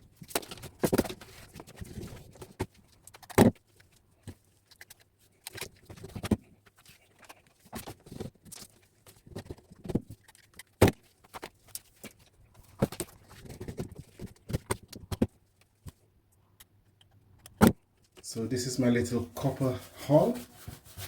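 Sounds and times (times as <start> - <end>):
rustling: 19.3 - 21.0.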